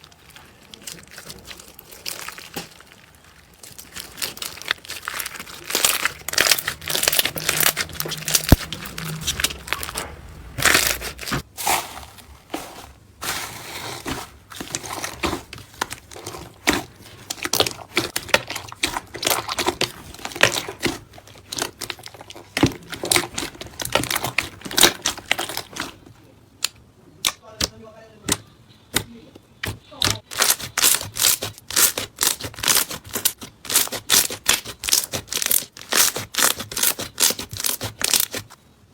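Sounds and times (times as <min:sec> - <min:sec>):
slime crackling and squelching: 0:00.0 - 0:26.8, 0:29.6 - 0:38.6.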